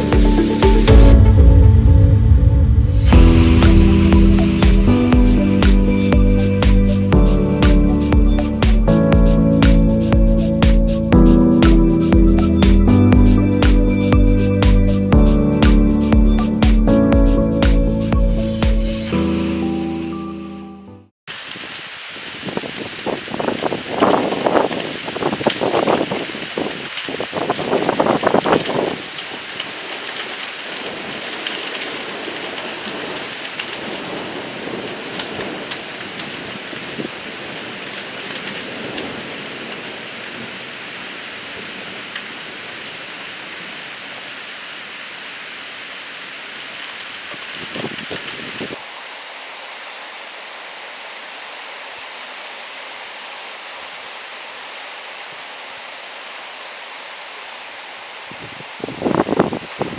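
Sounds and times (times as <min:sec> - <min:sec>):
thunder rumbling: 0:00.9 - 0:06.8
steady rain falling: 0:02.9 - 0:16.8, 0:21.3 - 0:59.9.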